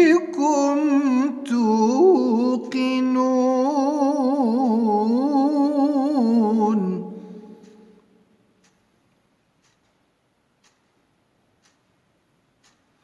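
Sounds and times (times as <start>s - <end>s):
man chanting melodically: 0.0s - 7.8s
faint clicks: 7.5s - 13.0s.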